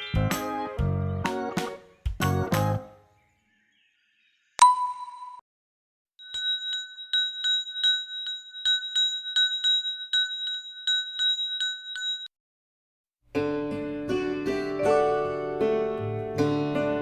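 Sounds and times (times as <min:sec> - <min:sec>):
cartoon bell-like ringing tone: 0:06.2 - 0:12.3.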